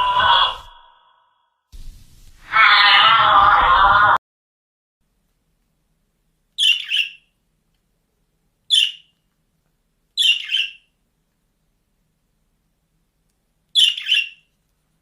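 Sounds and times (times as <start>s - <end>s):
bird chirping calls: 6.6s - 7.3s, 8.7s - 9.1s, 10.2s - 10.9s, 13.8s - 14.5s.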